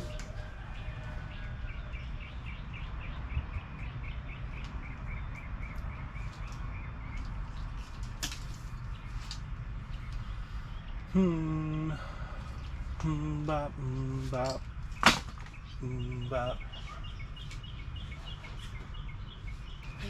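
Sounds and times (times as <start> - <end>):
bird chirping rapidly: 0.0 - 8.0, 14.6 - 20.0
low background hum: 0.0 - 20.0.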